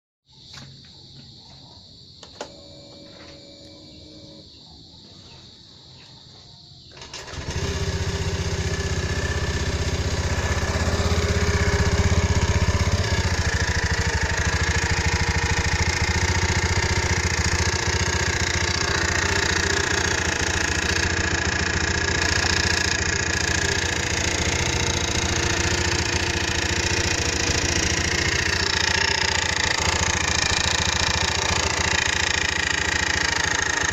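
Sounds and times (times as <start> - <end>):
click: 2.2 - 2.6
scooter engine starting and idling: 2.2 - 4.7, 6.9 - 33.9.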